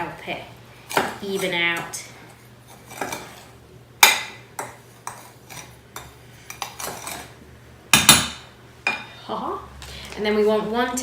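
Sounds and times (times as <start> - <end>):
spoon scraping bowl: 0.9 - 3.6, 4.9 - 7.4.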